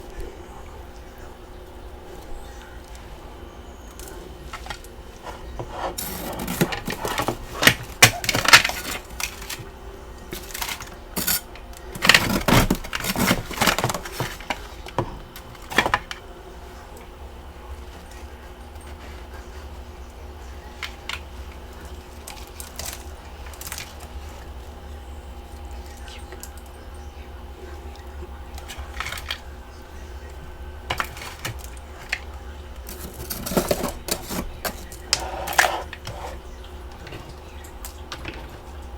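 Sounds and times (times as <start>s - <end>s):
faint steady hum: 0.0s - 38.9s
ice crunching while chewed: 5.9s - 16.2s, 18.0s - 24.7s, 30.2s - 38.6s.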